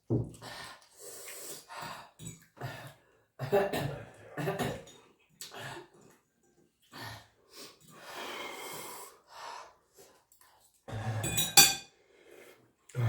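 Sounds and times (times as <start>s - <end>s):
heavy breathing and gasping: 10.9s - 11.6s.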